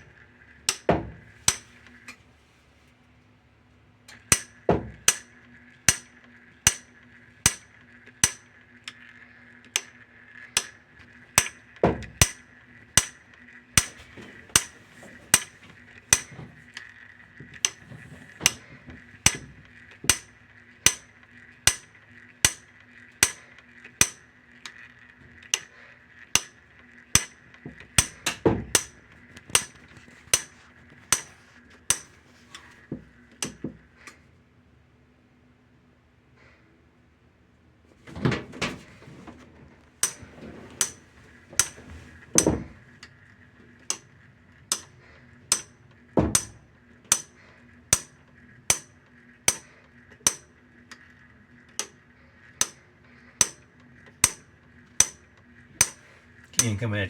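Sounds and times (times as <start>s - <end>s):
washing machine clicking: 0.0s - 2.0s, 13.8s - 21.8s, 38.0s - 43.2s, 55.0s - 56.9s.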